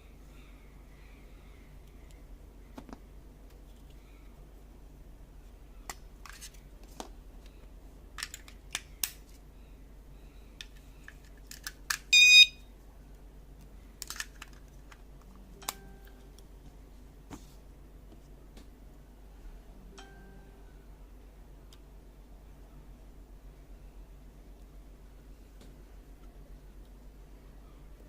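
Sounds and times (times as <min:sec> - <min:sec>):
plastic clicks: 0:08.2 - 0:09.4, 0:13.6 - 0:15.8
high-pitched alarm beep: 0:12.1 - 0:12.6.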